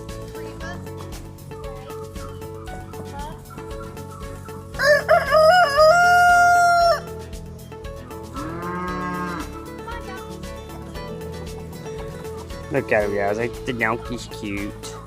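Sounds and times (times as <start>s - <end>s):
rooster crowing: 4.8s - 7.1s.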